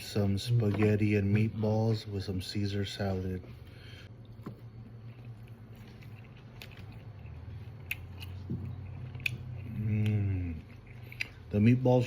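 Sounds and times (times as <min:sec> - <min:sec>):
soft chewing: 0:03.4 - 0:11.9
person humming mmm: 0:09.6 - 0:10.8.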